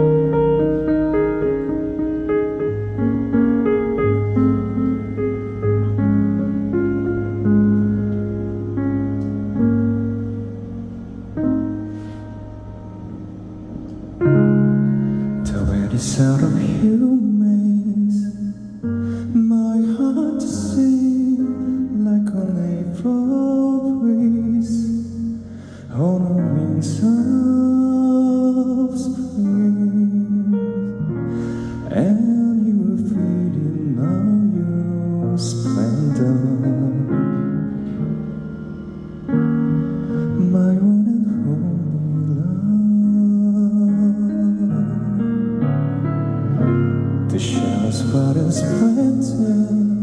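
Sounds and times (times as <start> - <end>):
sustained chords: 0.0 - 22.2, 31.1 - 43.2
slow piano ballad: 0.0 - 50.0.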